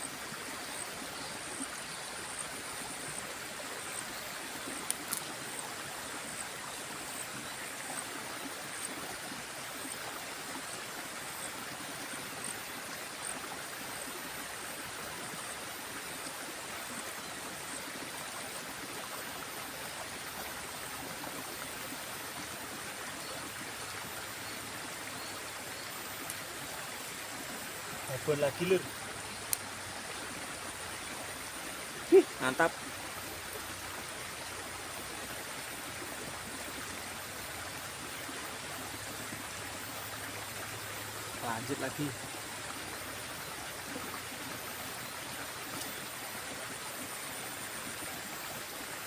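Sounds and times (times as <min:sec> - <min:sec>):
river water rushing: 0:00.0 - 0:49.0
faint click: 0:04.8 - 0:05.3, 0:29.4 - 0:29.7.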